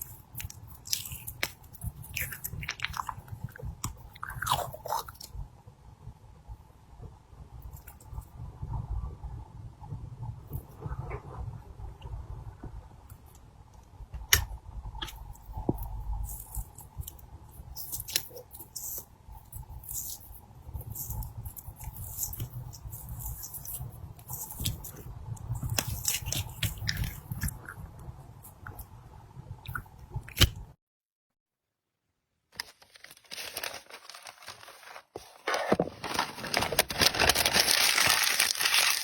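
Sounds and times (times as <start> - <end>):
slime squishing and crackling: 0.0 - 5.4, 14.2 - 29.0, 32.6 - 39.0.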